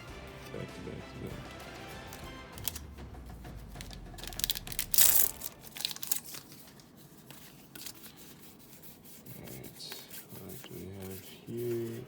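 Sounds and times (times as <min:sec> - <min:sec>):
wrapper crinkling and tearing: 0:02.1 - 0:02.9, 0:03.7 - 0:08.2.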